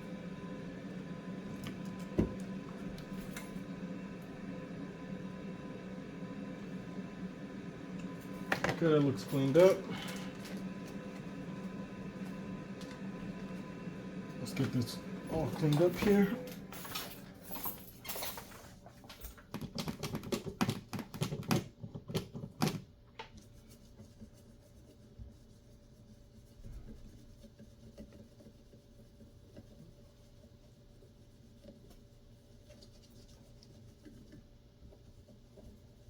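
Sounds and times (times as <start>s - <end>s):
faint steady hum: 0.0s - 19.4s.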